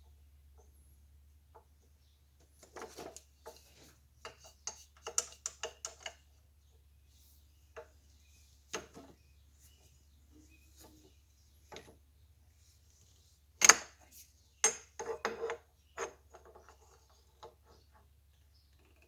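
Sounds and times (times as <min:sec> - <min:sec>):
hand tools clicking and tapping: 0:04.2 - 0:06.2.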